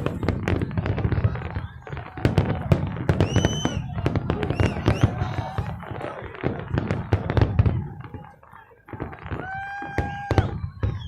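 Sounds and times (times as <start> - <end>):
firework whistle: 0.0 - 5.7, 9.3 - 11.0
fireworks bangs and crackling: 0.0 - 11.0.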